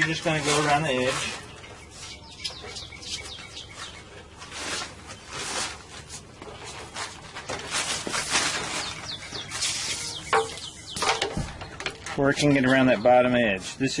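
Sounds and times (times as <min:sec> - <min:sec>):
rustling from hands: 0:00.0 - 0:11.2
small birds chirping: 0:00.0 - 0:14.0.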